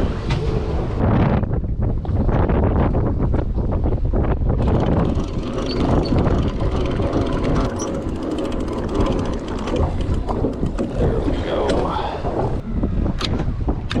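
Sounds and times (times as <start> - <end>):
wind buffeting microphone: 0.0 - 14.0
boat engine running: 4.6 - 12.6.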